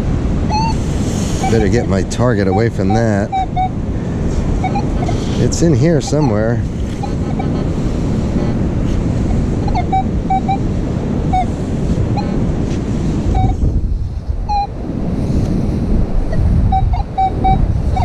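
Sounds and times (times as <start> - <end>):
beach surf: 0.0 - 18.0
wind buffeting microphone: 0.0 - 18.0
metal detector beeps: 0.5 - 0.8, 1.4 - 3.8, 4.6 - 7.5, 9.7 - 10.7, 11.3 - 11.5, 13.3 - 13.6, 14.5 - 14.7, 16.7 - 18.0.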